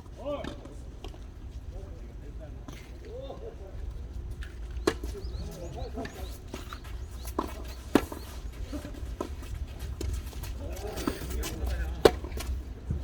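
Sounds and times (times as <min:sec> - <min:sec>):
faint distant voices: 0:00.2 - 0:13.0
racket hitting tennis ball: 0:04.8 - 0:11.4.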